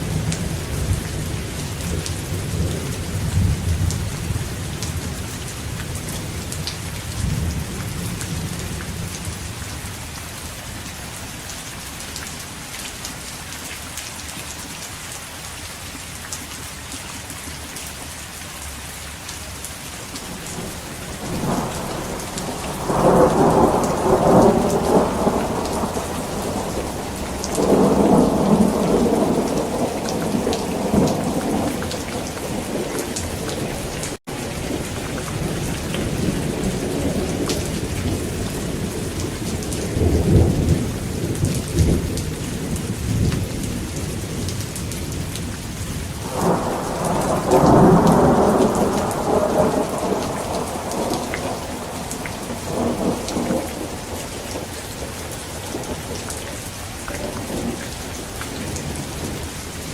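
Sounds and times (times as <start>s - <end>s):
heavy rain: 0.0s - 59.9s
thunder rolling: 20.3s - 39.2s, 46.2s - 56.2s.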